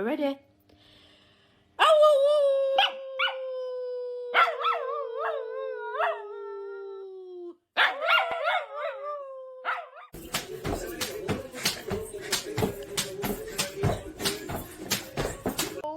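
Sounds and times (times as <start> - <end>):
dog howling: 1.8 - 10.1.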